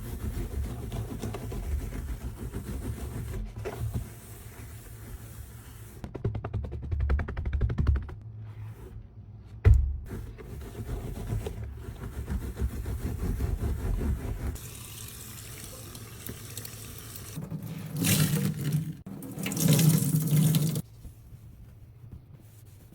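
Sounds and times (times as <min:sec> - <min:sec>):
scrubbing a metal sink: 0:00.0 - 0:06.1, 0:10.0 - 0:22.9
tap running: 0:14.6 - 0:20.8.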